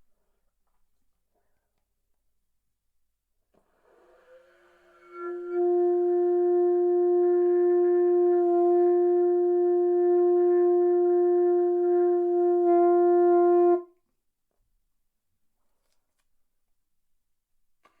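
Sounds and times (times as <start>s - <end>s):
saxophone long held note: 5.0s - 13.9s.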